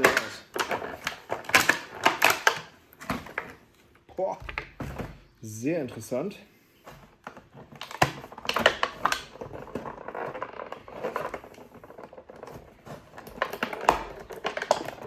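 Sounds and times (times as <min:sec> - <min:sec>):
toy packaging clicks and crackles: 0:00.0 - 0:03.5, 0:07.3 - 0:15.0.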